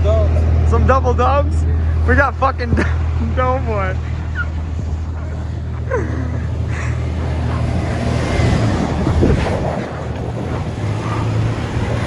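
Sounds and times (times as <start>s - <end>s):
pickup truck engine running: 0.0s - 12.0s
tyres in snow: 1.7s - 12.0s
wind on microphone: 2.7s - 12.0s.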